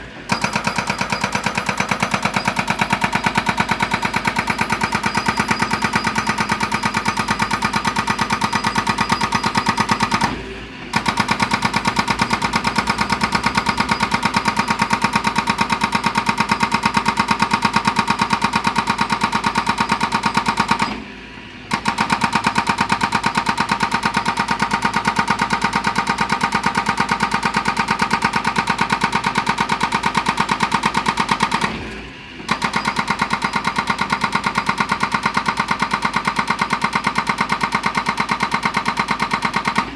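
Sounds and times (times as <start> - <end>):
excavator engine: 0.0 - 16.4, 30.6 - 39.9
hydraulic breaker hammer pounding stone: 0.0 - 39.9.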